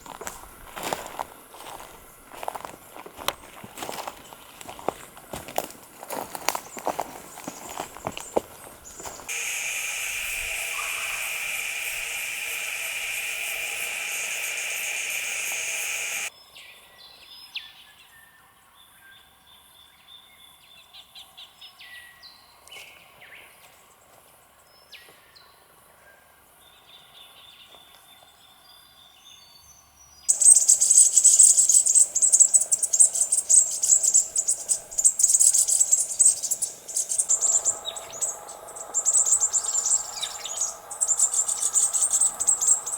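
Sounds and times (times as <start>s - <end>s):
high insect drone: 0.0s - 16.3s, 30.3s - 42.9s
pulsing high insect buzz: 8.0s - 16.3s, 30.3s - 42.9s
short bird calls: 8.9s - 16.3s, 30.3s - 42.9s.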